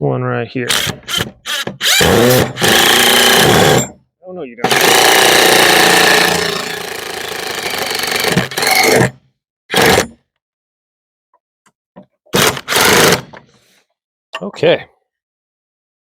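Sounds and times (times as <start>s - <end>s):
impact driver driving screw: 0.7s - 3.9s, 4.7s - 10.2s, 12.4s - 13.4s.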